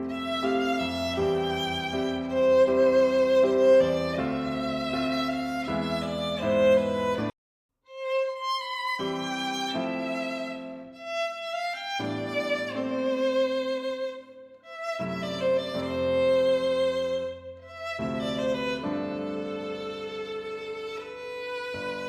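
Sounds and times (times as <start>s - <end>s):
violin-led instrumental music: 0.0s - 22.0s.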